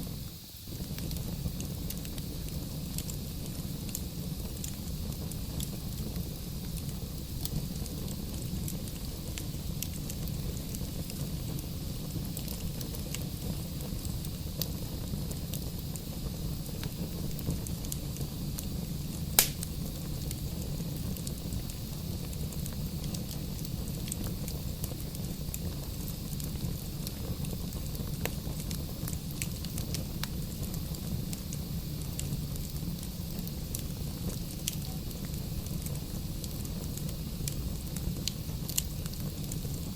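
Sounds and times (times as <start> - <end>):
firewood crackling: 0.0 - 39.9
low rumble of flames: 0.0 - 39.9
sharp pop of fire: 19.2 - 20.0.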